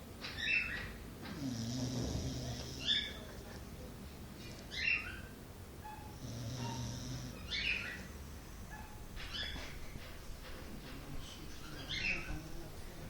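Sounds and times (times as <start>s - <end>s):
dog snoring: 1.3s - 3.2s, 6.0s - 8.7s, 11.9s - 13.0s
dog snorting: 1.3s - 3.2s, 6.1s - 9.0s.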